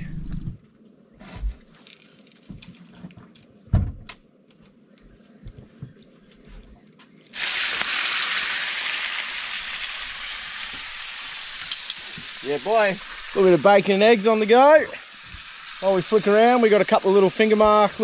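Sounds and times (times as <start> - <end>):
bacon and eggs sizzling in pan: 7.4 - 18.0.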